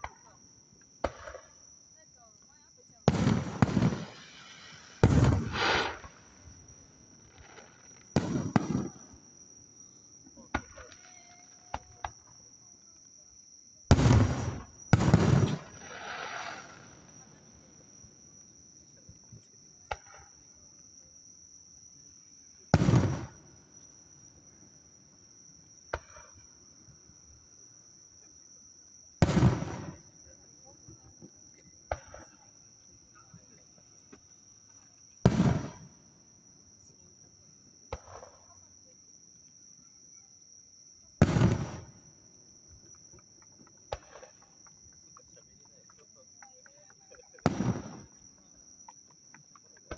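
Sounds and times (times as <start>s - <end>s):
insect trill: 0.0s - 49.9s
fireworks booming: 1.0s - 1.5s, 3.0s - 9.3s, 13.9s - 17.8s, 22.7s - 23.6s, 25.9s - 26.4s, 29.2s - 30.2s, 35.2s - 36.0s, 37.9s - 38.4s, 41.2s - 42.2s, 42.8s - 44.5s, 47.3s - 49.9s
fireworks crackle: 3.0s - 9.1s, 13.9s - 17.5s, 22.7s - 23.4s, 29.2s - 30.0s, 35.2s - 35.9s, 41.2s - 42.0s, 42.7s - 45.8s, 46.4s - 49.9s.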